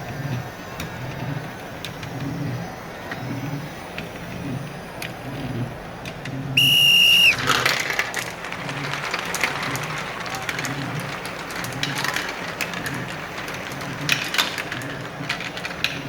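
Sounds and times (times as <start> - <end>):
crowd noise: 0.0 - 16.0
referee's whistle blast: 6.6 - 7.4.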